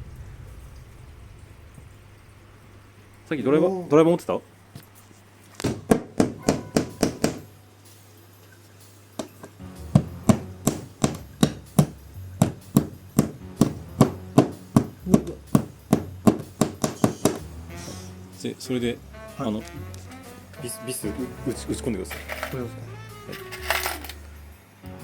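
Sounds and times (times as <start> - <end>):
hammer knocking into plasterboard: 5.6 - 7.5, 9.9 - 17.5
background music: 5.8 - 25.0.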